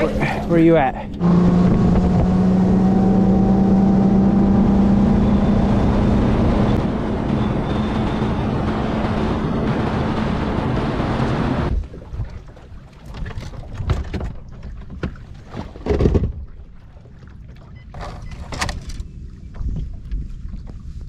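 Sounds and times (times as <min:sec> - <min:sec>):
outboard motor running: 0:00.0 - 0:11.8.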